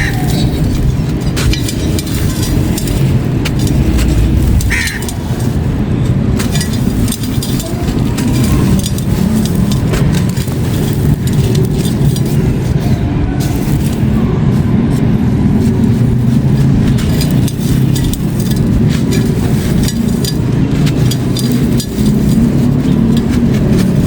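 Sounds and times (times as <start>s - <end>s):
loud low rumble: 2.6s - 6.4s.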